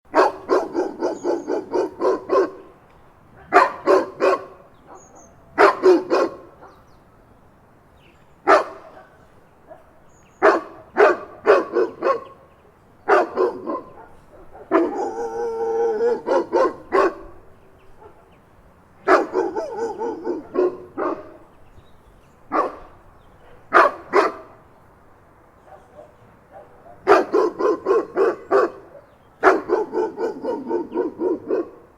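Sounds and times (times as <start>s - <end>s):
dog whining bark: 0.1s - 2.7s, 3.4s - 6.8s, 10.4s - 12.4s, 13.1s - 17.4s, 19.0s - 21.4s, 22.5s - 22.9s, 23.5s - 24.5s, 25.7s - 31.8s
big dog barking: 0.1s - 6.9s, 8.4s - 18.3s, 19.0s - 21.5s, 22.5s - 24.6s, 25.6s - 31.9s.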